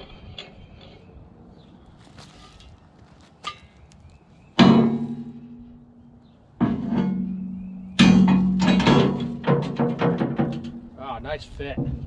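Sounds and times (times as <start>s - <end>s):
steel fork clanging on bucket: 6.6s - 11.0s.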